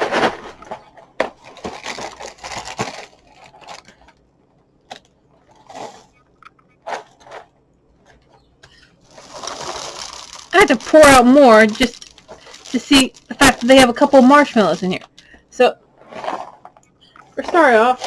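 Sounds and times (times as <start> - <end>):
cereal poured into bowl: 9.1 - 14.7
bag rustling: 9.1 - 15.0.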